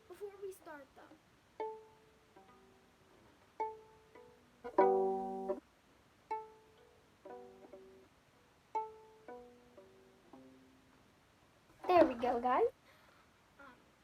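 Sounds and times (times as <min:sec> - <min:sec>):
bowed viola strings: 0:00.0 - 0:11.1
plucked viola strings: 0:00.0 - 0:11.1, 0:11.7 - 0:12.7.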